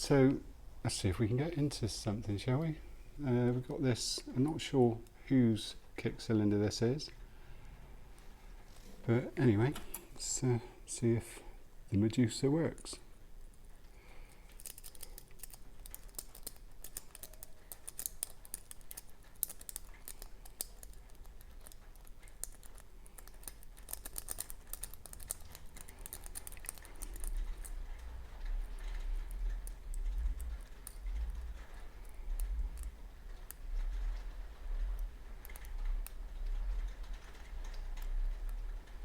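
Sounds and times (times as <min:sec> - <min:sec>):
lock pick clicking and scraping: 0:14.2 - 0:38.6.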